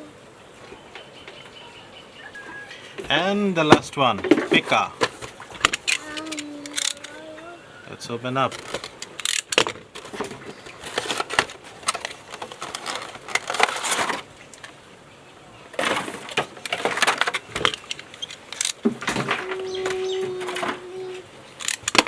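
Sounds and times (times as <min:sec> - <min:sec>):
packaging rustling and scraping: 0:08.6 - 0:14.3.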